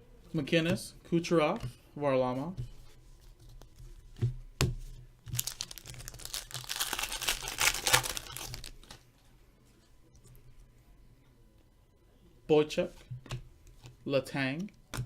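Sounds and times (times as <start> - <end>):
wrapper crinkling and tearing: 5.3 - 9.0.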